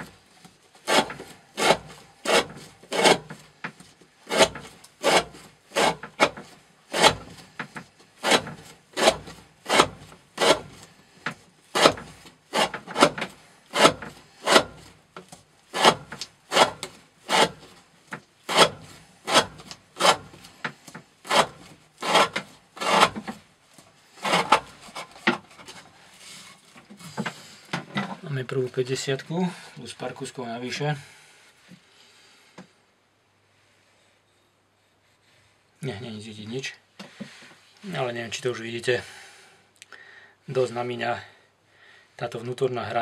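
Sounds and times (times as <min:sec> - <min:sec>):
knife slicing rope: 0:00.8 - 0:03.5, 0:04.3 - 0:07.5, 0:08.2 - 0:10.9, 0:11.7 - 0:15.0, 0:15.7 - 0:17.8, 0:18.5 - 0:20.6, 0:21.2 - 0:23.3.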